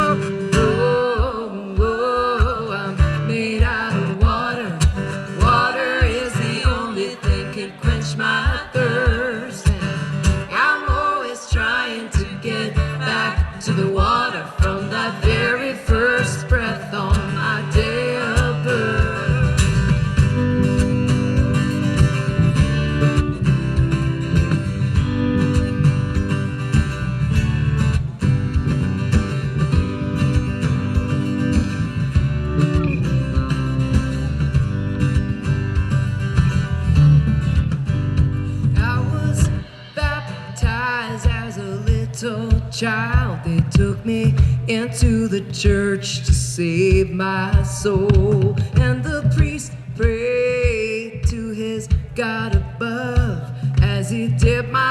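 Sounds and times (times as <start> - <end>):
wordless singing: 0.0 - 20.0, 38.8 - 54.9
live rock band: 0.0 - 54.9.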